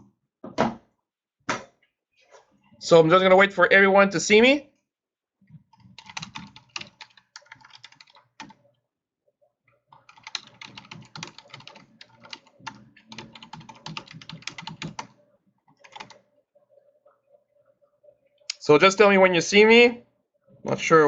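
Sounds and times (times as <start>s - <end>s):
typing on a computer keyboard: 5.7s - 8.6s, 9.9s - 15.1s, 15.7s - 16.2s.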